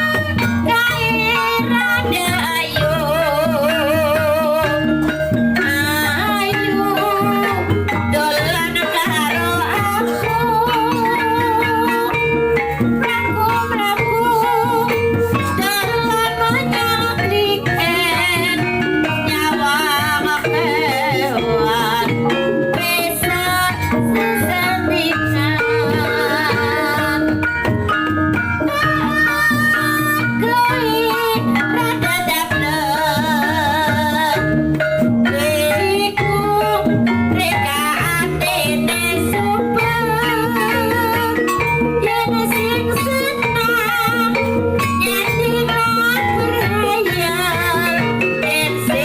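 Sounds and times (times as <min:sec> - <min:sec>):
drum-led accompaniment: 0:00.0 - 0:49.0
person singing: 0:13.1 - 0:27.4.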